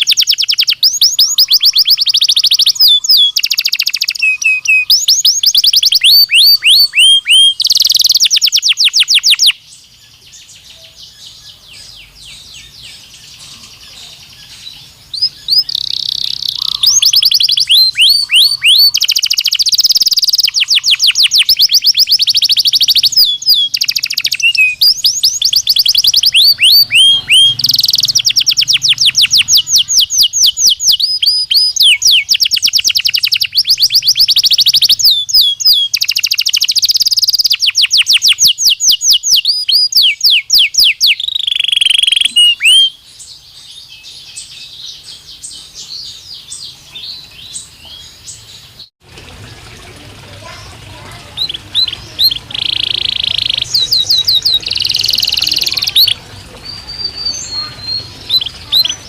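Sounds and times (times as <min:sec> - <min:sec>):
canary singing trills: 0:00.0 - 0:48.9, 0:50.4 - 0:59.0.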